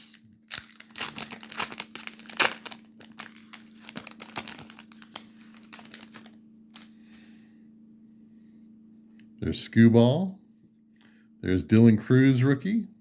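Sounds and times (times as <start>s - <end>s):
foil wrapper crinkling and tearing: 0.0s - 6.9s.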